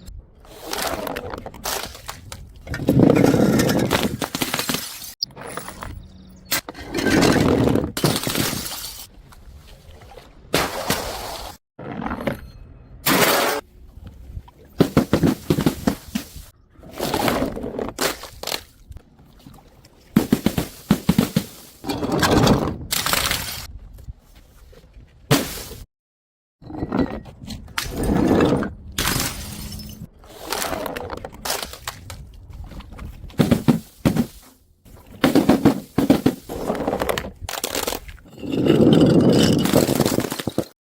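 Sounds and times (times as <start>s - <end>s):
glass bottles smashing: 8.0s - 9.1s, 29.0s - 30.1s, 38.3s - 40.8s.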